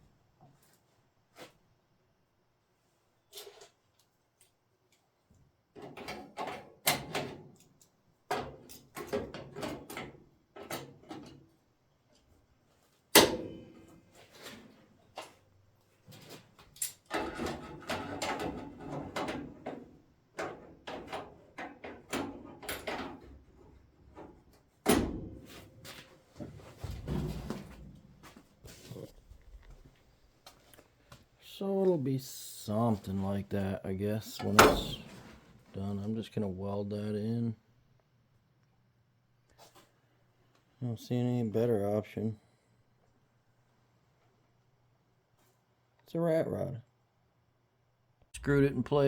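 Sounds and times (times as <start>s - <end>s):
metal parts clunking and rattling: 16.1s - 23.4s.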